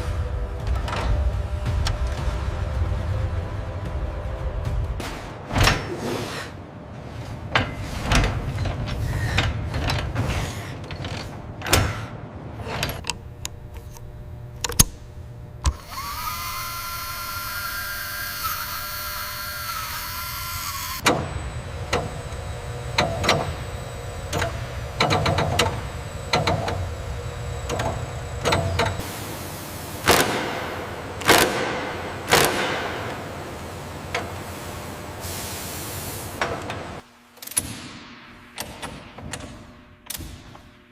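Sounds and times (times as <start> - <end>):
power tool whining: 14.7 - 29.1
sharp clicks and knocks: 24.3 - 26.9.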